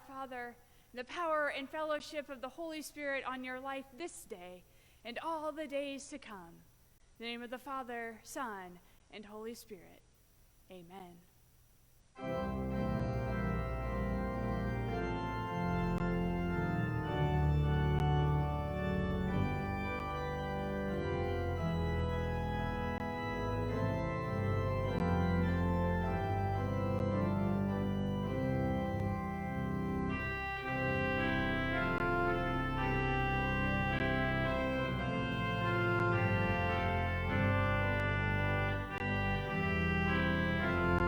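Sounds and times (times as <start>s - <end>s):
organ chords: 12.2s - 41.0s.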